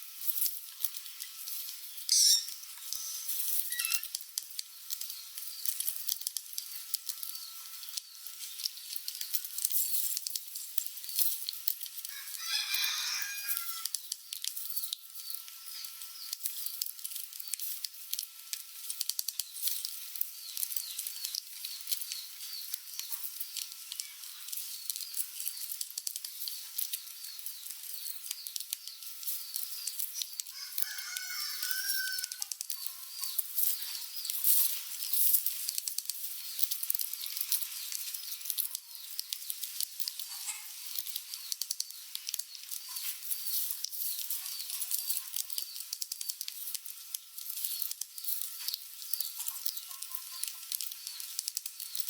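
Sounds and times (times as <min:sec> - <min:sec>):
rats squeaking: 0:02.0 - 0:04.2, 0:12.1 - 0:14.0, 0:26.4 - 0:46.8, 0:47.5 - 0:52.0
loud rat squeal: 0:02.1 - 0:04.1, 0:12.1 - 0:13.9, 0:30.6 - 0:32.5
clicks and scratches: 0:32.3 - 0:52.0.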